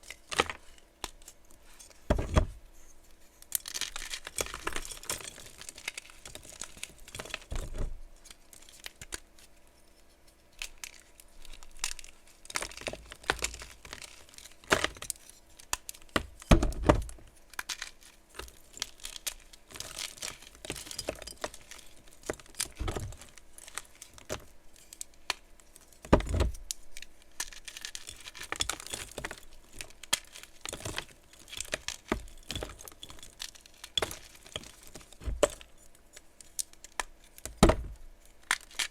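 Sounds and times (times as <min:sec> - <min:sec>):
chalk crunching and cracking: 0:02.8 - 0:07.5, 0:17.2 - 0:38.9.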